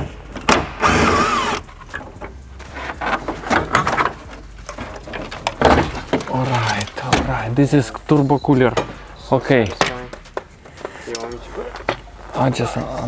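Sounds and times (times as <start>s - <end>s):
power tool whining: 0.6s - 1.7s.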